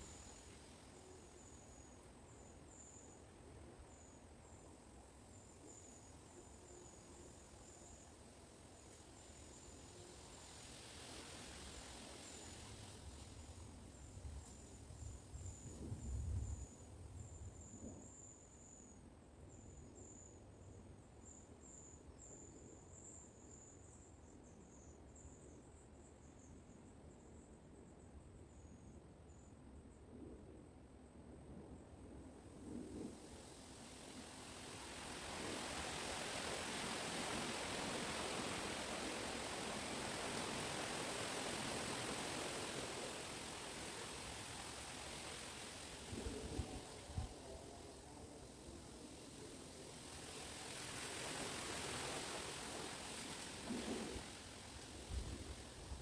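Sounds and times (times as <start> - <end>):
rushing hiss of woodland ambience: 0.0 - 29.9, 31.8 - 56.0
low rumble of wind: 13.0 - 18.0, 30.0 - 56.0.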